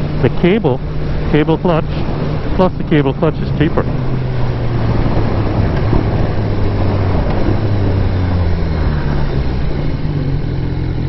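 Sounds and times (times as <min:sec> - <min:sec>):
motorcycle engine running: 0:00.0 - 0:11.0
road noise: 0:00.0 - 0:11.0
wind rushing: 0:03.5 - 0:10.2.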